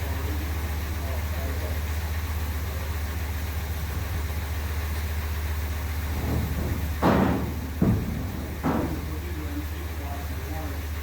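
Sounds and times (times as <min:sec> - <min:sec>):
low mechanical hum: 0:00.0 - 0:11.0
sharp knock: 0:06.2 - 0:09.4.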